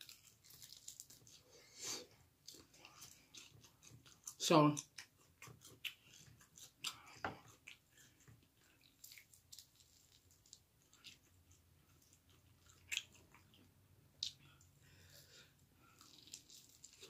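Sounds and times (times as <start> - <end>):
faint chewing: 0.0 - 17.0.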